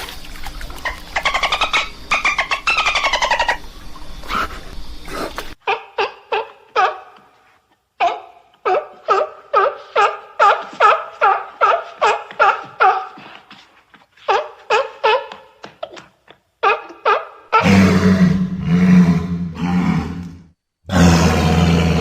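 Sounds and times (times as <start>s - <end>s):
seal barking: 8.0s - 13.4s.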